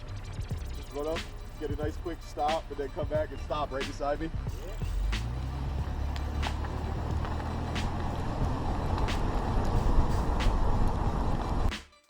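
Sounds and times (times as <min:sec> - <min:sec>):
car driving past: 0:04.5 - 0:11.7.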